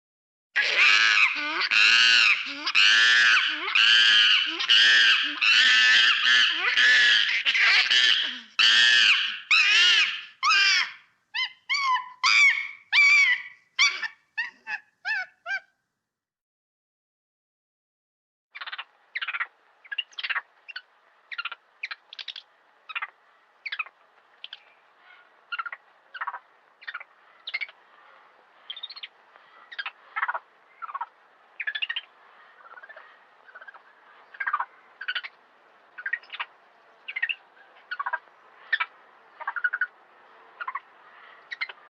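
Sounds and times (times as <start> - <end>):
monkeys calling: 0.6 - 15.7.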